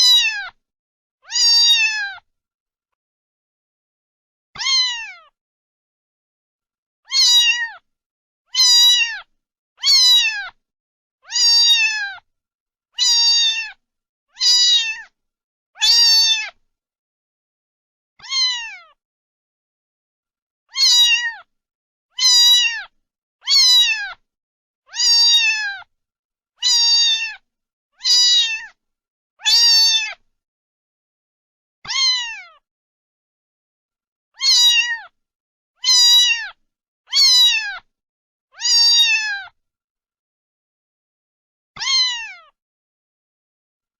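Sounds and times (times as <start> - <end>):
cat meowing: 0.0 - 0.6, 1.2 - 2.2, 4.6 - 5.3, 7.1 - 7.8, 8.5 - 10.6, 11.2 - 12.2, 13.0 - 13.8, 14.4 - 15.1, 15.8 - 16.6, 18.2 - 19.0, 20.7 - 21.5, 22.2 - 24.2, 24.9 - 25.9, 26.6 - 27.4, 28.0 - 28.8, 29.4 - 30.2, 31.9 - 32.6, 34.4 - 35.2, 35.8 - 37.9, 38.6 - 39.6, 41.8 - 42.6.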